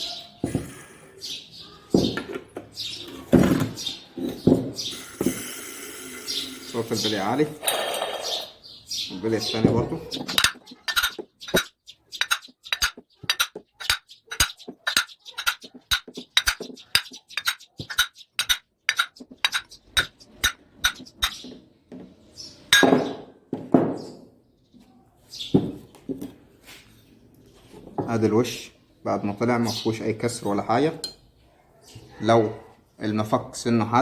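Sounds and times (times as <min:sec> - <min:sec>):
metallic clatter: 0:10.1 - 0:21.4
metal-on-metal tapping: 0:10.1 - 0:21.6.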